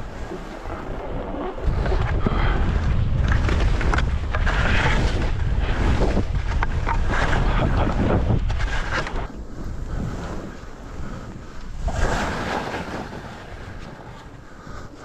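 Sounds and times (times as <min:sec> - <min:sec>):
skis scraping over snow: 0:00.0 - 0:14.3
wind buffeting microphone: 0:00.0 - 0:15.0.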